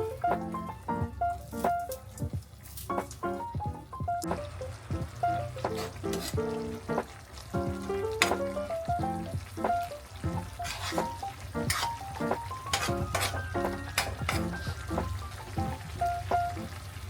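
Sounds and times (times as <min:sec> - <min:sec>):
background music: 0:00.0 - 0:17.0
fish sizzling in a frying pan: 0:04.3 - 0:17.0
utensil scraping a pan: 0:05.6 - 0:06.6, 0:10.4 - 0:14.7.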